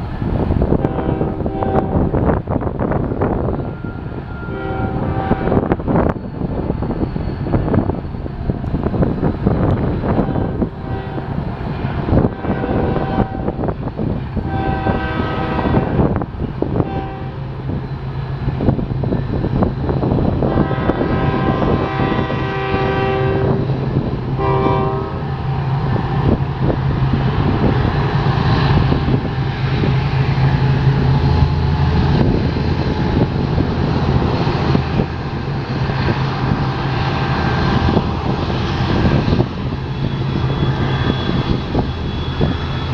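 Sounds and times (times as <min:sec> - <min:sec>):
diesel locomotive drone: 0:00.0 - 0:42.9
locomotive horn blasts: 0:00.8 - 0:02.2, 0:03.6 - 0:05.8, 0:10.1 - 0:11.4, 0:12.2 - 0:13.7, 0:14.4 - 0:16.1, 0:16.8 - 0:17.7, 0:20.4 - 0:26.7.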